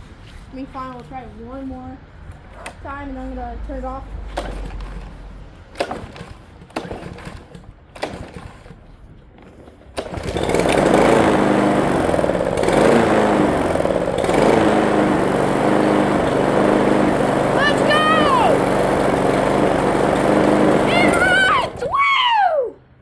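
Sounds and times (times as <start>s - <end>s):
lawn mower engine running: 4.0s - 22.1s.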